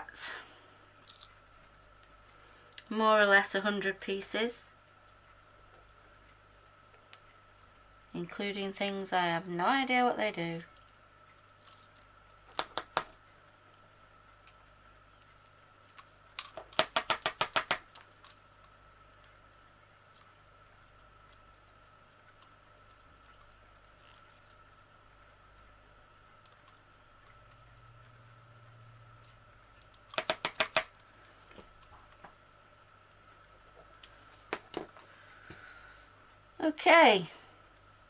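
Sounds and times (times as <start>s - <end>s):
faint steady hum: 0.0s - 38.0s
crochet tools clicking: 16.4s - 18.0s, 29.9s - 30.9s.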